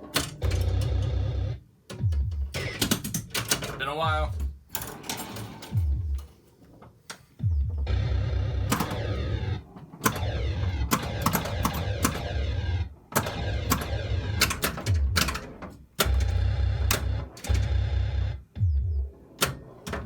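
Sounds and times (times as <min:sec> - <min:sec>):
electronic falling tones: 0:07.4 - 0:14.4
pinball flippers clacking: 0:08.7 - 0:09.2.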